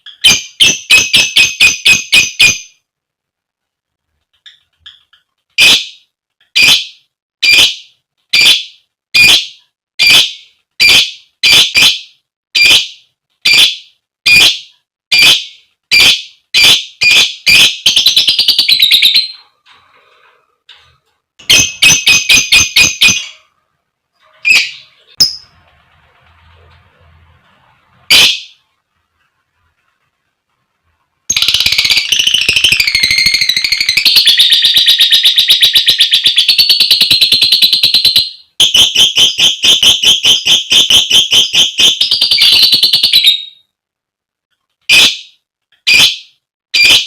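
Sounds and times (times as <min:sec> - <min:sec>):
lovebird high-pitched calls: 0:06.6 - 0:19.4, 0:21.4 - 0:23.4, 0:24.4 - 0:25.5, 0:28.1 - 0:28.6, 0:31.3 - 0:43.6, 0:44.9 - 0:47.0
lovebird rattling chatter: 0:31.3 - 0:38.2.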